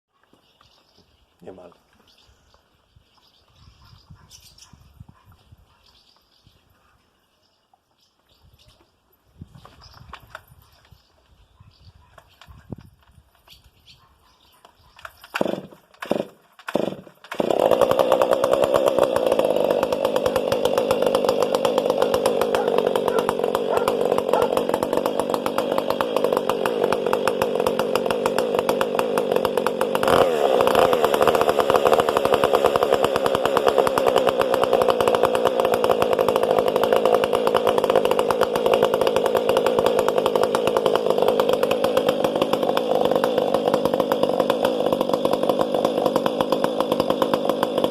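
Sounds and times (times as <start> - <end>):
chainsaw starting and running: 15.0 - 47.9.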